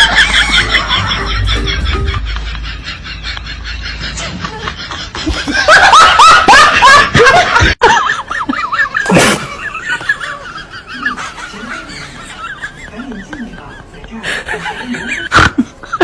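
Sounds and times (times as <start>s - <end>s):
person laughing: 0.0s - 3.4s.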